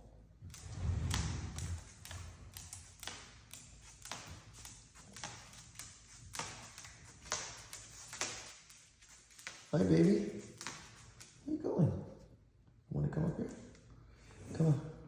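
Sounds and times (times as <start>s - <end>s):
bird claws tapping on hard floor: 0.5s - 11.4s.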